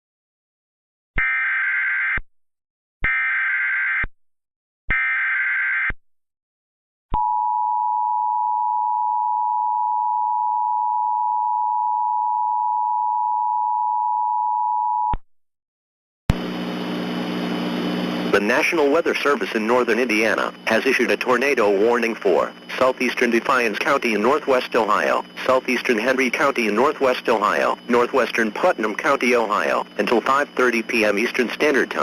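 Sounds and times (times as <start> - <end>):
digital header data bursts: 18.4 - 32.0.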